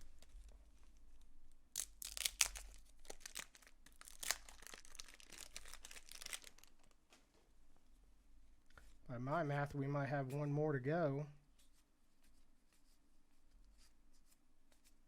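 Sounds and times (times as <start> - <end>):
wrapper crinkling and tearing: 1.8 - 7.0.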